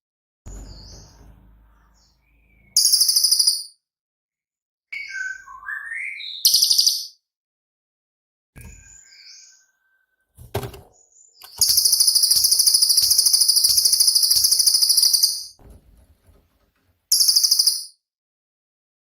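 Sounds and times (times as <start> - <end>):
faint low knocks: 0.5 - 2.4, 15.6 - 17.0
songbird rattling trill: 11.4 - 15.6, 17.1 - 17.9.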